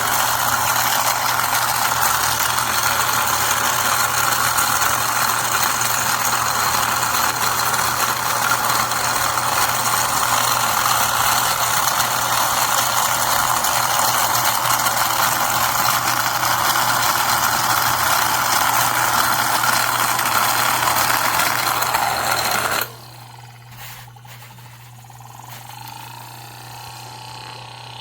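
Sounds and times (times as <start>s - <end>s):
mini vacuum cleaner whirring: 0.0s - 28.0s.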